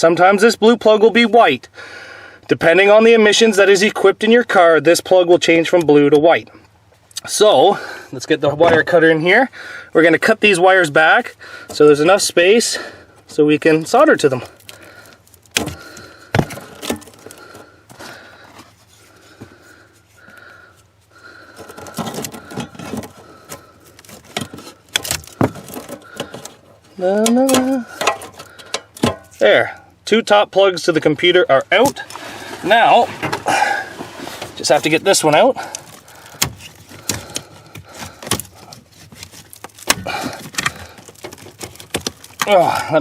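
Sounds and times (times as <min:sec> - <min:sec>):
rustling and clicking of plugs: 0:21.4 - 0:29.4, 0:31.7 - 0:43.0.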